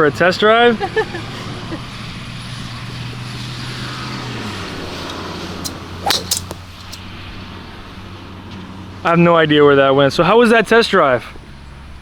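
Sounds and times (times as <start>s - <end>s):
car engine hum: 0.0s - 12.0s
road and wind noise: 0.0s - 12.0s
sharp clicks: 5.0s - 7.0s.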